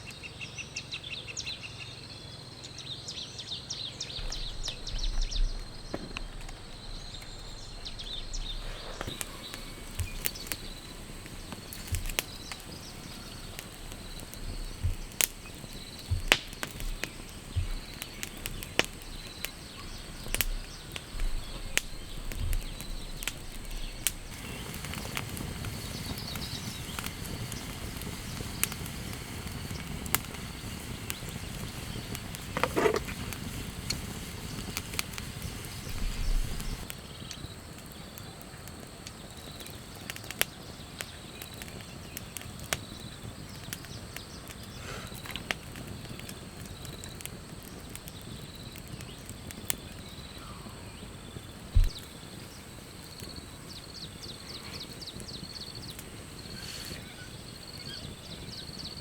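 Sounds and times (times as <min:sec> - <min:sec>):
raindrops tapping on fabric: 0:04.2 - 0:38.0, 0:51.7 - 0:52.2
rain hissing on a tent: 0:04.2 - 0:59.0.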